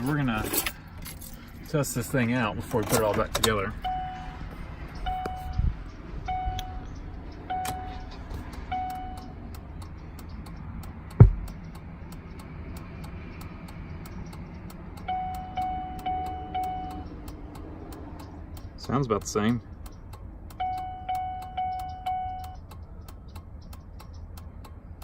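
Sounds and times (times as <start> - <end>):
sharp knock: 11.2 - 11.5.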